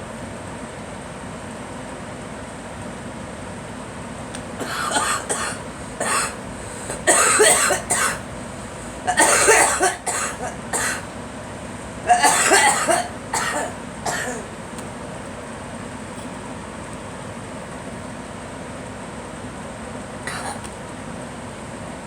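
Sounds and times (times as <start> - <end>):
steady background hum: 0.0 - 22.0
girl coughing: 4.6 - 11.1, 12.0 - 14.5, 20.3 - 20.7.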